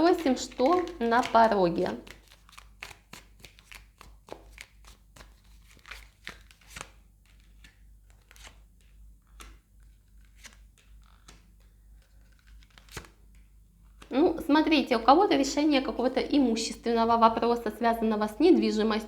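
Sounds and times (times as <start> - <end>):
cards being shuffled: 0.0 - 14.2.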